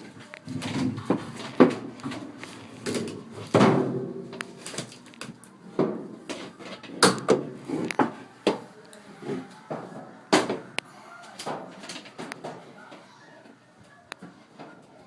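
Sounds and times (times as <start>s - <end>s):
knocks on metal dryer cabinet: 3.5s - 4.4s.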